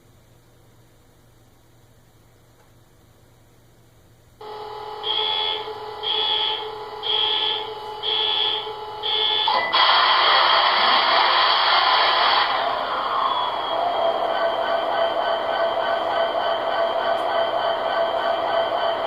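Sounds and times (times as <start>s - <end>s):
steady electronic hum: 0.0s - 19.0s
buzzer-like beeps: 4.4s - 9.8s
loud broad rushing sound: 9.5s - 17.6s.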